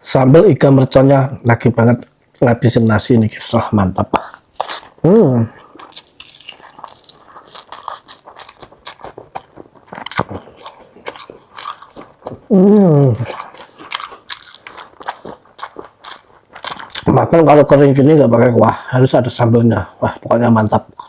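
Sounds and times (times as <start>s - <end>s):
chewing and crunching food: 4.2s - 18.9s, 19.8s - 21.0s
person humming: 5.0s - 5.6s, 12.5s - 13.4s.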